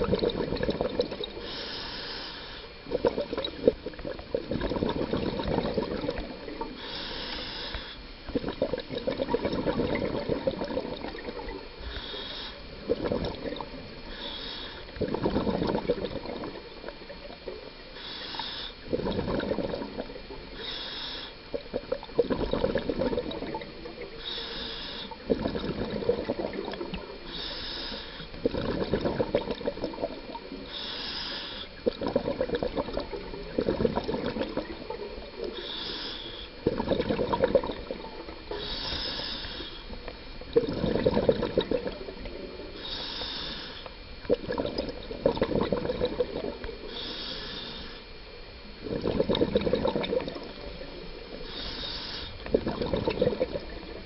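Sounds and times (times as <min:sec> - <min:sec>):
bubbling exhaled air: 0:00.0 - 0:54.0
regulator inhale hiss: 0:01.3 - 0:04.0, 0:06.1 - 0:08.3, 0:11.7 - 0:13.0, 0:13.7 - 0:15.2, 0:16.5 - 0:19.1, 0:20.3 - 0:21.6, 0:23.6 - 0:25.4, 0:26.4 - 0:28.5, 0:29.8 - 0:32.0, 0:34.7 - 0:36.7, 0:37.8 - 0:40.5, 0:42.0 - 0:44.2, 0:46.3 - 0:49.0, 0:50.5 - 0:52.7.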